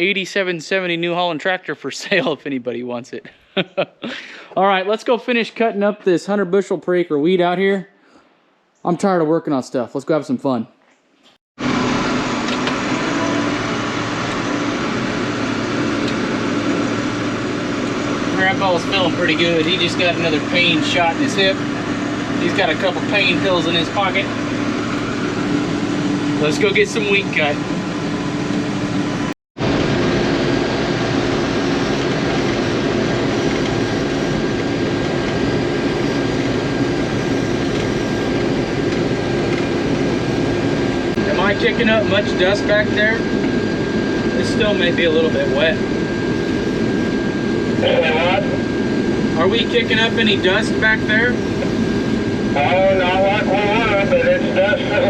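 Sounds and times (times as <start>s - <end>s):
diesel engine droning: 11.6s - 55.0s.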